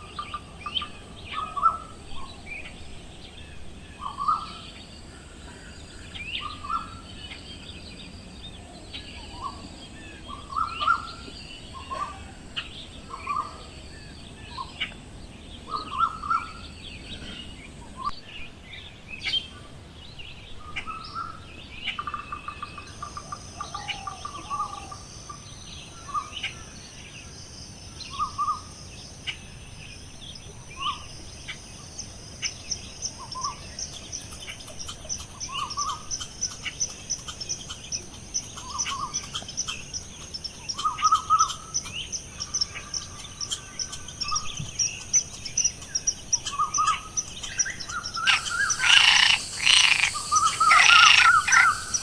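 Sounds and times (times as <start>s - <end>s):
outdoor background noise: 0.0s - 52.0s
birds chirping: 28.0s - 52.0s
bird trill: 32.0s - 52.0s.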